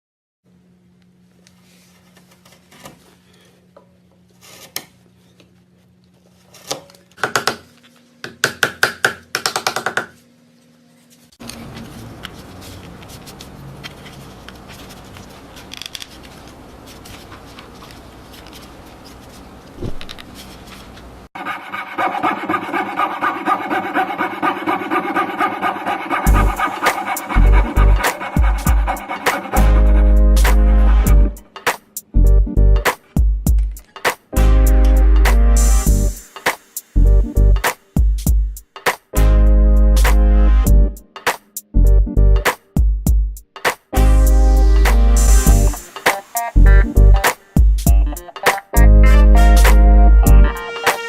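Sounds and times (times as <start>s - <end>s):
tool scraping wood: 21.4s - 30.1s
steady rasping on wood: 21.4s - 30.2s.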